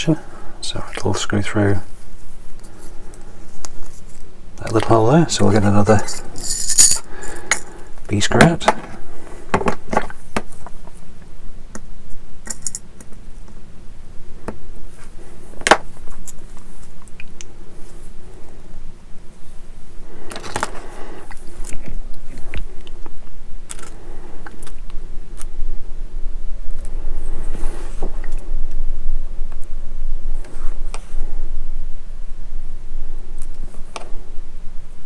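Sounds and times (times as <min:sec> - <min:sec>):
steady low hum: 0:00.0 - 0:35.0
small parts clicking and rattling: 0:05.9 - 0:07.7.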